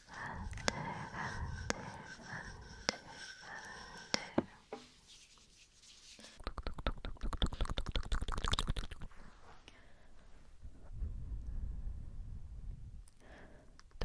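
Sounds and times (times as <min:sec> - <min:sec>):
mouth clicking and crackling: 0:06.2 - 0:09.1.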